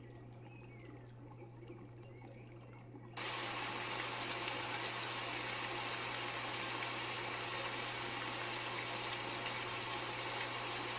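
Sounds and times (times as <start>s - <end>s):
faint birdsong: 0.0s - 3.2s
low steady hum: 0.0s - 10.9s.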